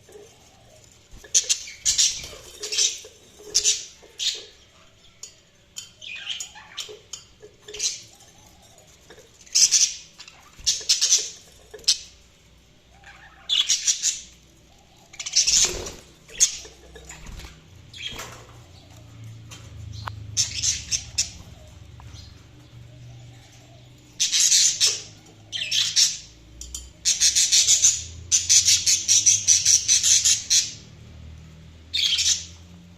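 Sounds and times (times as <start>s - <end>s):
budgerigars chirping and squawking: 0.0s - 12.2s, 12.9s - 26.4s, 27.0s - 31.0s, 31.9s - 32.6s.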